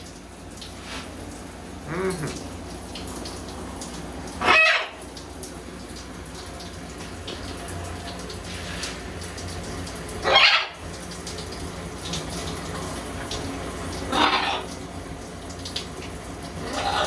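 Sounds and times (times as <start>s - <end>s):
shower water running: 0.0s - 17.0s
parrot squawks: 4.4s - 5.0s, 10.2s - 10.8s, 14.1s - 14.7s, 16.7s - 17.0s.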